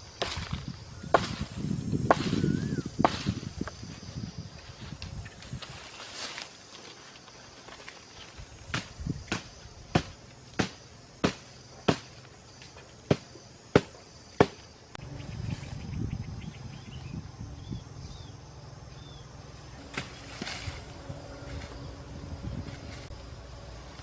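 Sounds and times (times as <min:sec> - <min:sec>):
rustling and handling noise: 0:03.7 - 0:09.0.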